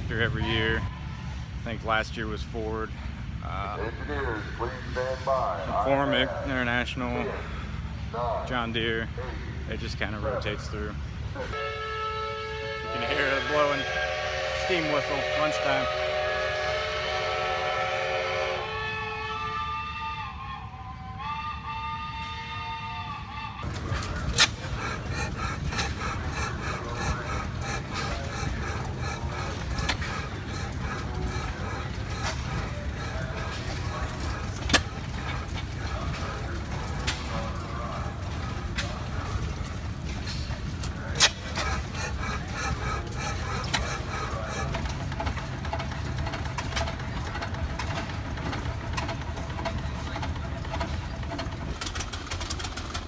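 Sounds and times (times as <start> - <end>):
people talking: 0.0 - 0.9, 1.6 - 7.4, 8.2 - 9.1, 9.7 - 11.0, 12.9 - 13.8, 14.6 - 15.9, 23.8 - 39.7
steam whistle blowing: 11.5 - 24.6
low engine rumble: 23.1 - 53.0.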